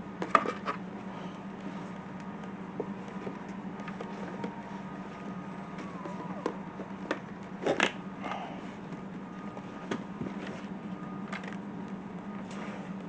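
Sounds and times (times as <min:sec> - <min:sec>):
steady low hum: 0:00.0 - 0:13.0
parts clicking and knocking: 0:05.8 - 0:08.0.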